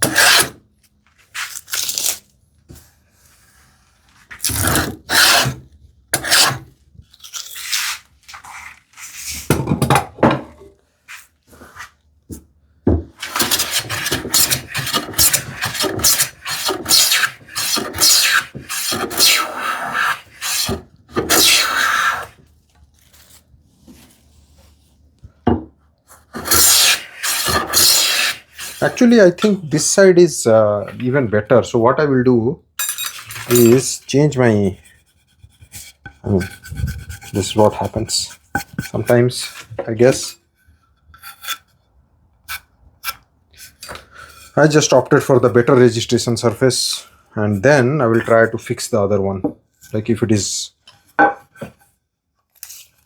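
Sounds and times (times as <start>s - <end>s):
hand plane scraping wood: 0.0s - 0.6s, 3.2s - 6.7s, 13.2s - 22.4s, 26.2s - 29.7s, 33.2s - 41.8s.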